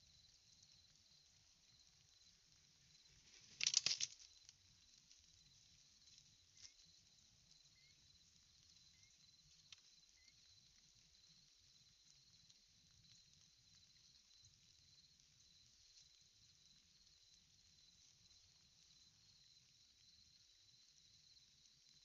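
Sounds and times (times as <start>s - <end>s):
twigs rustling: 3.1s - 5.2s.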